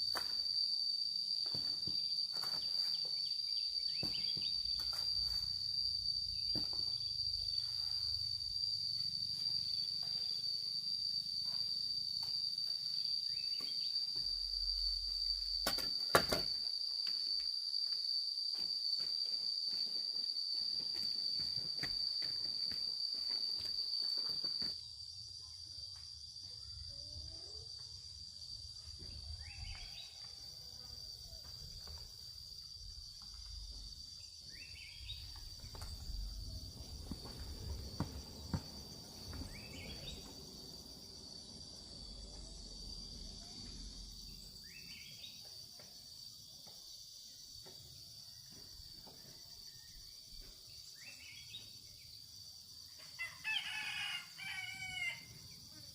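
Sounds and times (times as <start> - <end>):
insects droning: 0.0 - 55.9
rooster crowing: 53.0 - 55.5.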